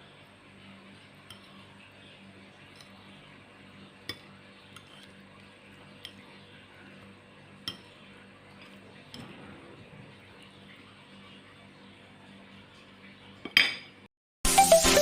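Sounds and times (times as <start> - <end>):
small scrapes and knocks: 4.7 - 5.2
utensil clinking against a dish: 7.6 - 9.4.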